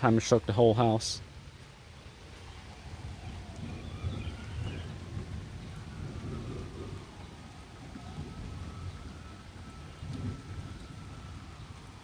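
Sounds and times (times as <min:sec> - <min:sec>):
thunder rumbling: 0:02.4 - 0:12.0.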